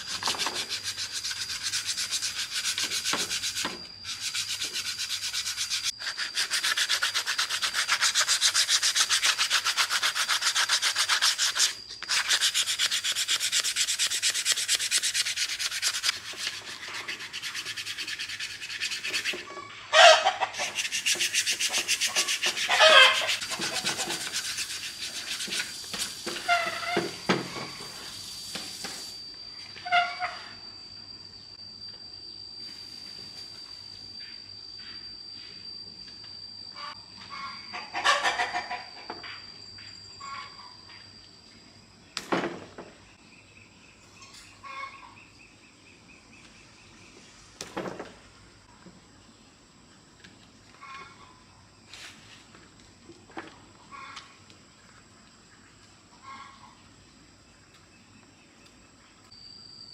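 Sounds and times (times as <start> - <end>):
hand sanding strokes: 0.0 - 19.5, 20.5 - 27.0.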